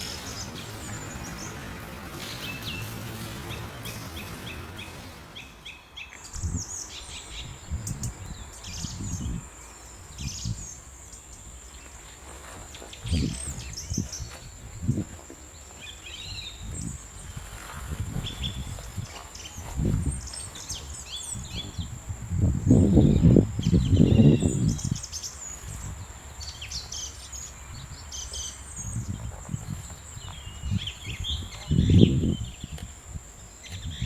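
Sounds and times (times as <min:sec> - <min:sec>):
low rumbling noise: 0:00.0 - 0:11.7
steady high-pitched whine: 0:00.0 - 0:26.4
small birds chirping and trilling: 0:00.0 - 0:34.0.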